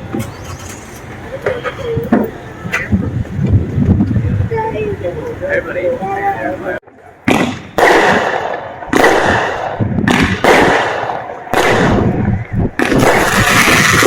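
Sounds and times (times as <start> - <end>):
fireworks bursting: 7.2 - 14.0.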